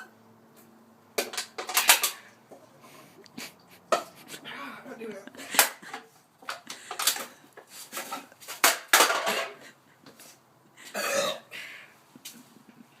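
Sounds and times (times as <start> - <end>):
person choking on soda: 10.9 - 11.5.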